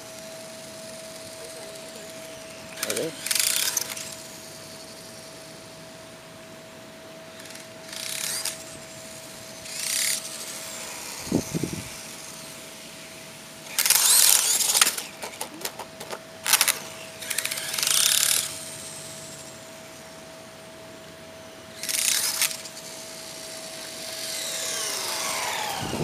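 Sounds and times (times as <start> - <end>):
electric toy truck motor whirring: 0.0 - 5.9, 7.3 - 20.1, 21.7 - 26.0
quick clicks: 13.7 - 18.5.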